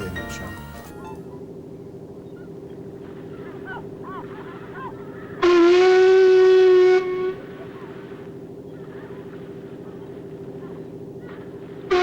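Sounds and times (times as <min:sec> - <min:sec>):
low hum: 0:00.0 - 0:12.0
horn-like blast: 0:05.4 - 0:07.4.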